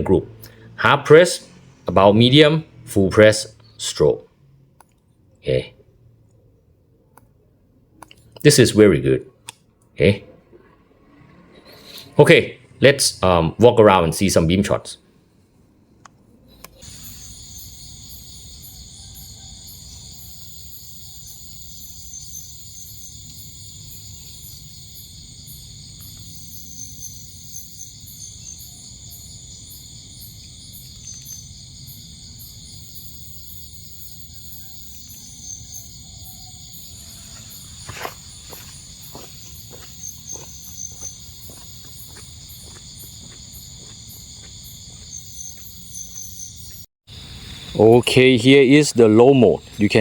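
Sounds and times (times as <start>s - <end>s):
crickets and insects trilling: 16.8s - 50.0s
high pulsing chirp: 16.8s - 50.0s.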